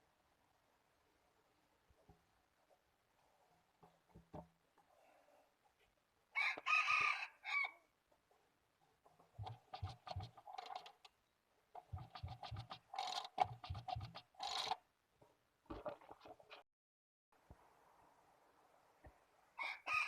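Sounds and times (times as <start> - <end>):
chickens clucking: 11.8 - 14.8.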